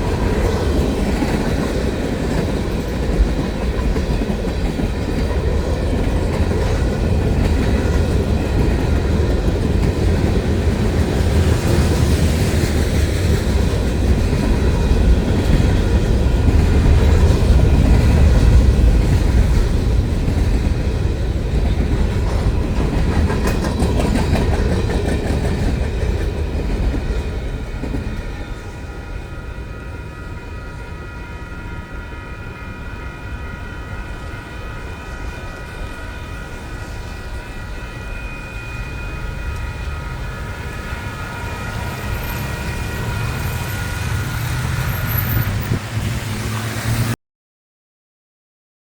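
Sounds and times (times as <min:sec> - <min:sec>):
wheels clattering on rails: 0:00.0 - 0:29.3
train rumbling past: 0:00.0 - 0:47.2.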